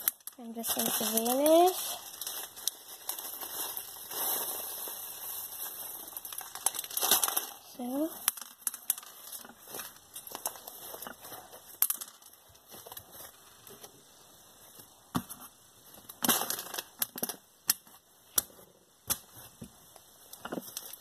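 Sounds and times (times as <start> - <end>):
slime clicking and crackling: 5.4 - 11.9.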